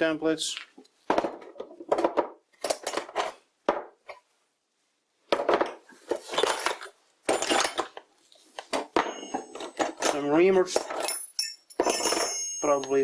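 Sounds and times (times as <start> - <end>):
metal tools clinking and clattering: 6.3 - 8.0, 8.9 - 13.0.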